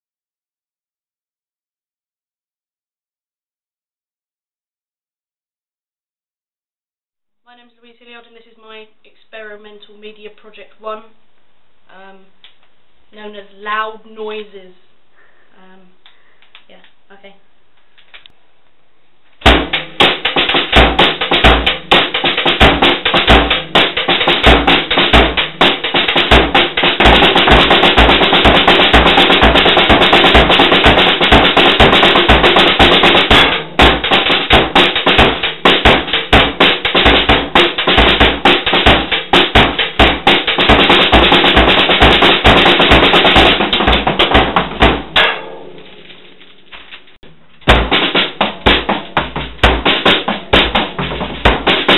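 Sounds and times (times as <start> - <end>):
deep kick drum strokes: 19.4 - 45.9, 47.6 - 51.9
drum kit playing a beat: 19.4 - 46.1, 47.6 - 51.9.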